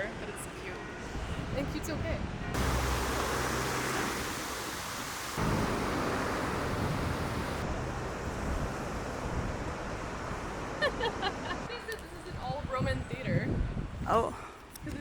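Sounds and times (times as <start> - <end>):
steady rushing noise: 2.6 - 9.9.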